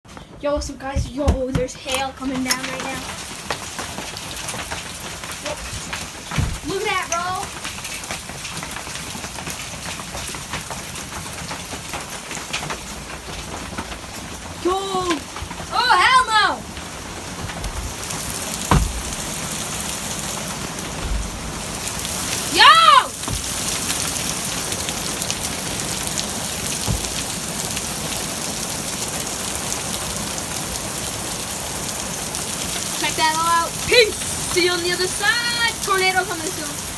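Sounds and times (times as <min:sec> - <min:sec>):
hailstones ticking on surfaces: 0:00.2 - 0:36.9
rain hissing: 0:01.7 - 0:36.9
low thump: 0:06.3 - 0:06.7, 0:18.6 - 0:19.5, 0:21.0 - 0:21.6, 0:23.3 - 0:23.6, 0:26.9 - 0:27.2.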